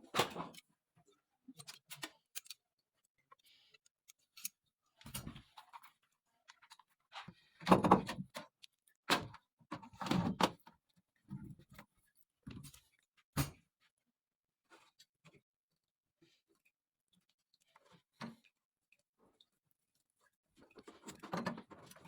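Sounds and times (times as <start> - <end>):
objects clattering and knocking: 20.7 - 22.0.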